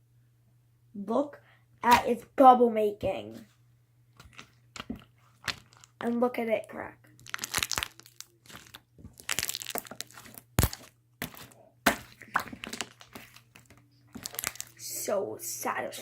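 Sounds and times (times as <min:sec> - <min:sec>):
slime crackling and popping: 0:04.2 - 0:06.2, 0:07.2 - 0:14.8
slime sharp loud crack: 0:07.2 - 0:13.0.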